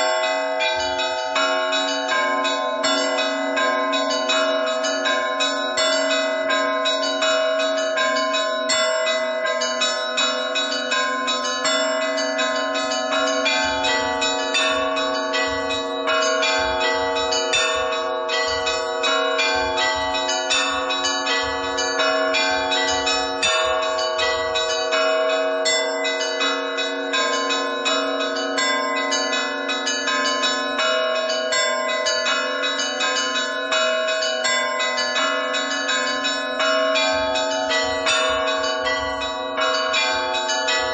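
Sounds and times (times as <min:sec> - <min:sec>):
large bells ringing: 0:00.0 - 0:40.9
small bells struck rapidly: 0:28.6 - 0:40.9.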